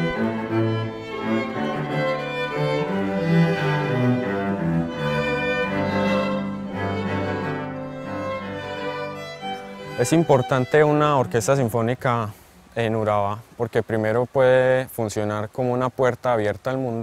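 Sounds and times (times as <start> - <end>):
orchestra strings playing: 0.0 - 12.8.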